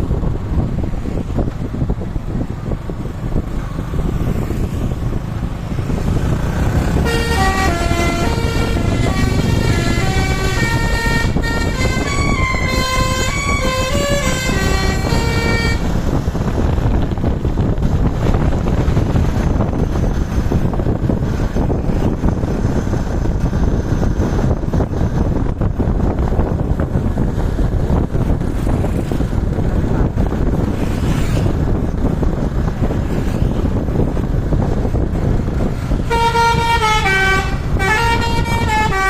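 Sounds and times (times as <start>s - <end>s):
wind noise: 0.0s - 39.0s
multi-tone air horn tune: 7.0s - 15.9s, 36.0s - 39.0s.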